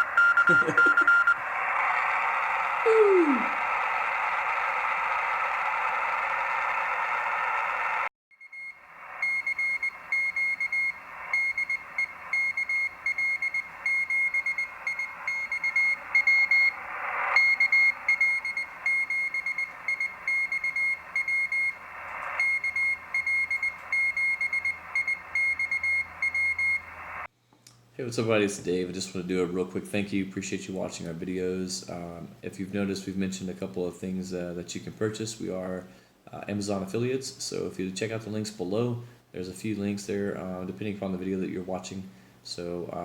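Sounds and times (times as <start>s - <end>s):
morse code beeps: 0.0s - 1.4s, 8.4s - 16.8s, 17.4s - 26.9s
radio receiver hiss: 0.0s - 8.1s, 8.8s - 27.3s.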